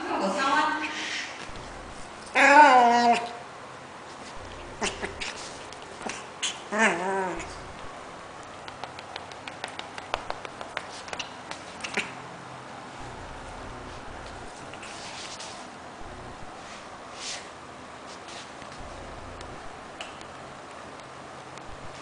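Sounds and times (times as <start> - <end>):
dog whining: 2.2 - 3.4, 4.6 - 5.5, 6.1 - 7.6
small clicks and taps: 8.4 - 12.1.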